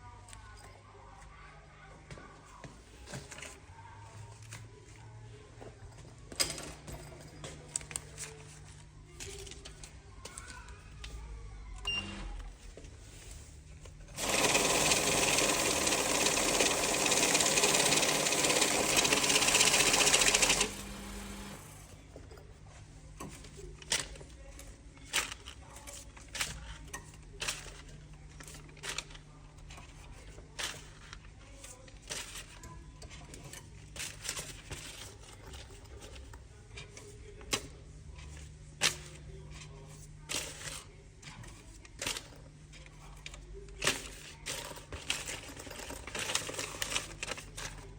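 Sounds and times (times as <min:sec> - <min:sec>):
banknotes rustling and clicking: 0:06.5 - 0:11.2, 0:13.0 - 0:21.8, 0:23.2 - 0:47.9
banknote counting machine whirring: 0:14.2 - 0:22.0.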